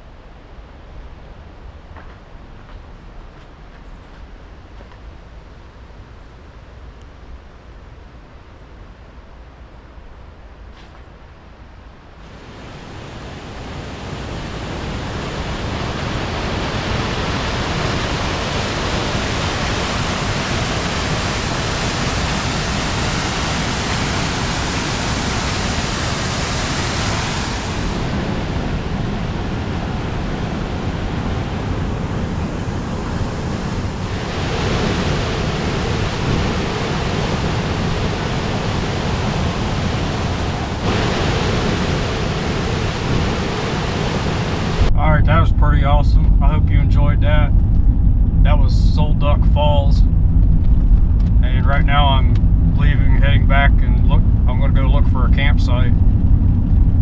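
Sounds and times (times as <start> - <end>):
waterfall roaring: 12.2 - 44.9.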